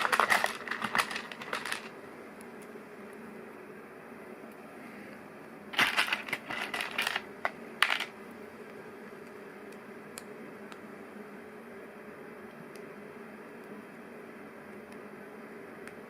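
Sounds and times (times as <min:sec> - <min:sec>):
plastic pieces clattering: 0:00.0 - 0:01.9, 0:05.8 - 0:08.1.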